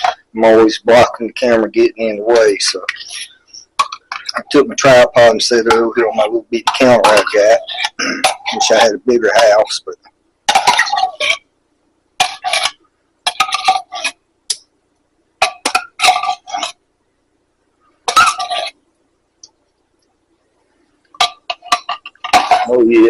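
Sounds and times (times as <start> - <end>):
utensil scraping a frying pan: 2.9 - 9.0, 12.2 - 14.2, 15.4 - 16.8, 18.1 - 18.8, 21.2 - 22.8.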